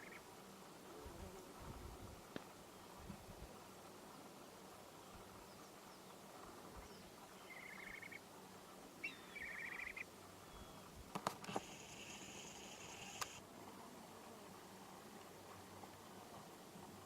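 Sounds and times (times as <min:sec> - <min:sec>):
faint bird trills: 0:00.0 - 0:00.2, 0:07.4 - 0:08.2, 0:09.0 - 0:10.8
thin steady high tone: 0:11.5 - 0:13.4
sharp clicks: 0:12.9 - 0:13.4.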